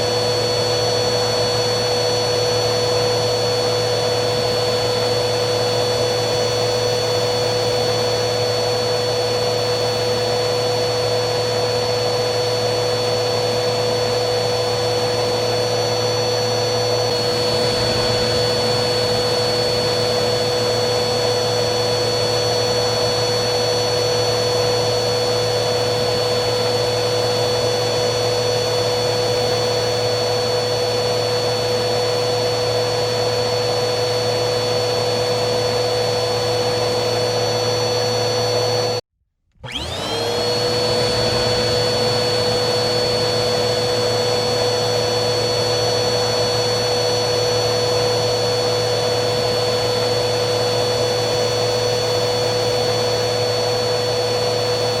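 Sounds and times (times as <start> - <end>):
vacuum cleaner motor whine: 0.0 - 55.0.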